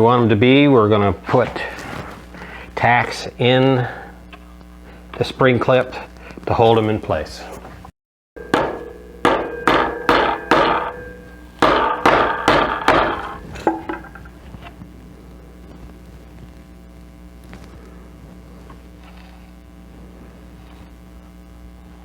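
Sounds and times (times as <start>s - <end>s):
faint steady hum: 0.0s - 22.0s
hammer blows on tacks: 8.4s - 14.4s.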